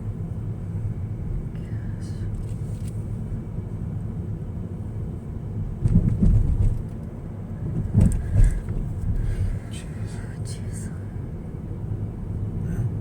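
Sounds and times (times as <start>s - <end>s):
car engine and tyres rumbling: 0.0s - 13.0s
car bumps: 5.8s - 7.0s, 7.7s - 9.5s.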